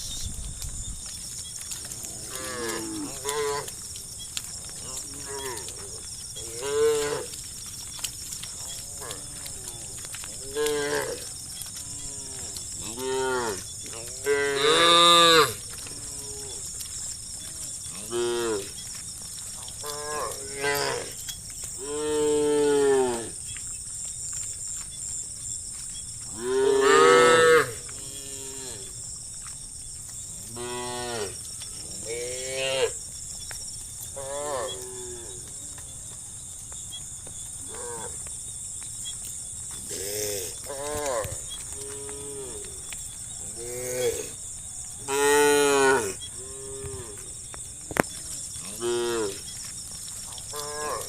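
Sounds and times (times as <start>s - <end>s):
cows mooing: 1.8s - 3.7s, 4.7s - 7.4s, 8.6s - 16.6s, 17.5s - 18.8s, 19.8s - 21.2s, 26.3s - 28.9s, 45.0s - 47.3s, 48.6s - 49.4s, 50.5s - 51.0s.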